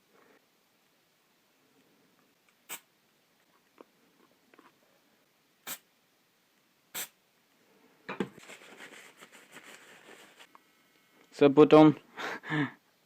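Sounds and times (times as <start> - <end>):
scratchy rustling: 8.4 - 10.5.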